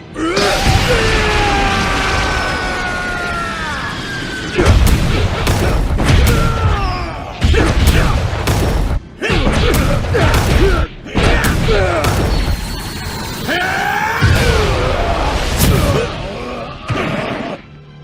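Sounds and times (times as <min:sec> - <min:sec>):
heavy impacts and booms: 0:00.4 - 0:12.6.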